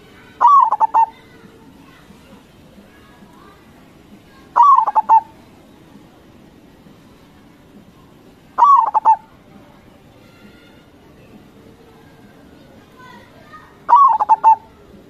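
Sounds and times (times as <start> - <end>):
dove cooing: 0.4 - 1.2, 4.6 - 5.3, 8.6 - 9.3, 13.9 - 14.7.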